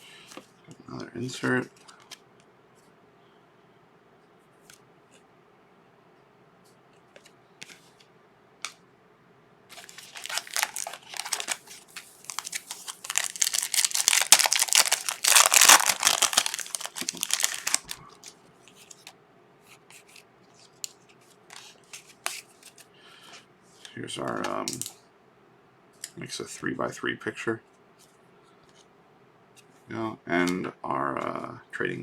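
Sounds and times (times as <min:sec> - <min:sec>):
foil wrapper tearing and crinkling: 0:09.7 - 0:18.3
cards clicking: 0:09.8 - 0:18.3.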